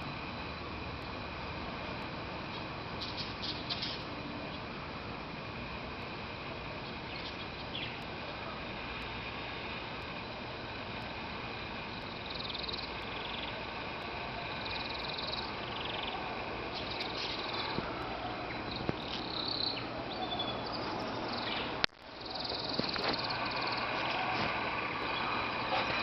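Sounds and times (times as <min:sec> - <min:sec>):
steady background noise: 0:00.0 - 0:26.0
canaries singing trills: 0:02.4 - 0:04.7, 0:06.8 - 0:08.1, 0:12.0 - 0:26.0.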